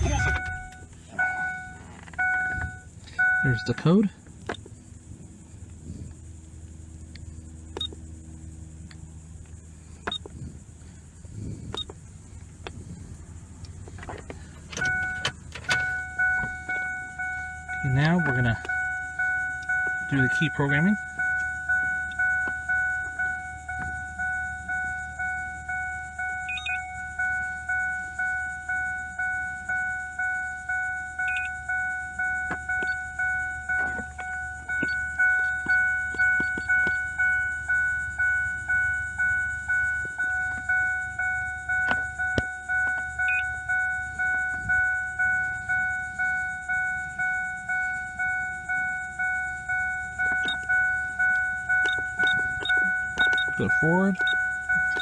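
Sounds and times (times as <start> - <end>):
car warning chime dinging: 0.0 - 5.1, 14.4 - 55.0.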